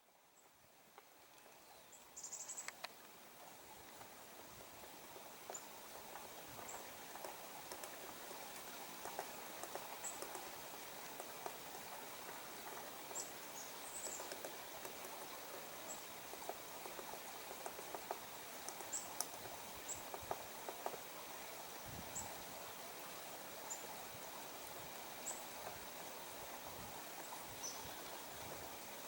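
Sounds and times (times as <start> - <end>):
woodpecker tapping on wood: 5.2 - 21.1.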